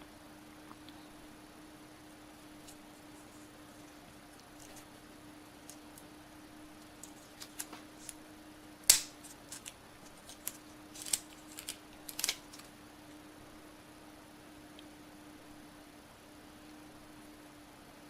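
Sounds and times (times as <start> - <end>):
packaging clicks and crinkles: 6.8 - 8.2, 8.9 - 12.7.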